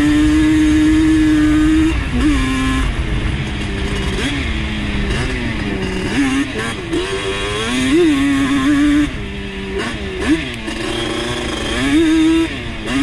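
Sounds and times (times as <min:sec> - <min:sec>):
quad engine revving: 0:00.0 - 0:13.0.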